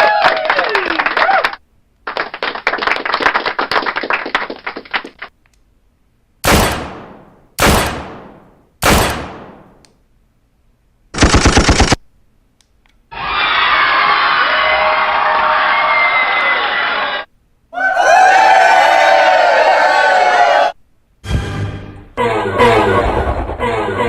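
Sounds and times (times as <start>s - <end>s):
machine-gun burst: 6.4s - 9.6s, 11.1s - 12.0s
gunshot blasts: 6.4s - 9.8s.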